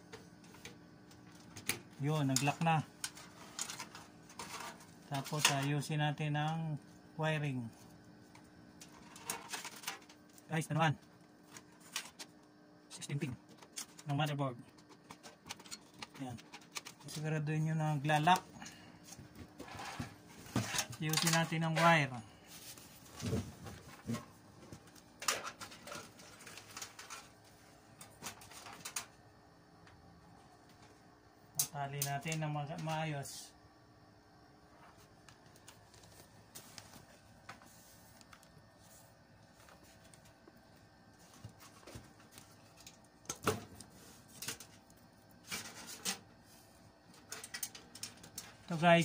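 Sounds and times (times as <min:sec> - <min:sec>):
cables clicking and rustling: 0:08.3 - 0:10.5, 0:13.4 - 0:17.5, 0:20.6 - 0:22.2, 0:23.1 - 0:29.2, 0:39.4 - 0:46.3, 0:47.0 - 0:48.8.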